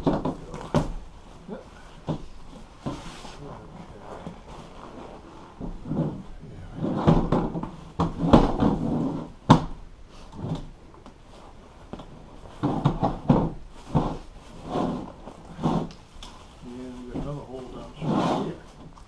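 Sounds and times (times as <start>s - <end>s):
staples scraping and creaking: 12.6s - 19.0s.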